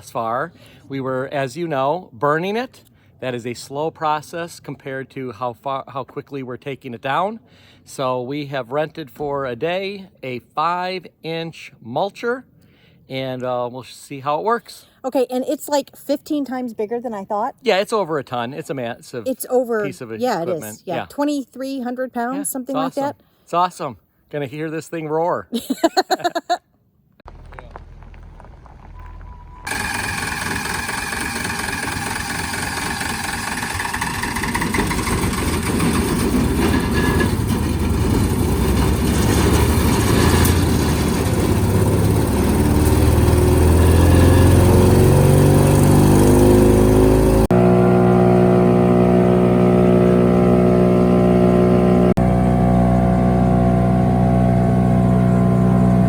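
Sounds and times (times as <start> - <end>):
wood chipper running: 27.3 - 56.0.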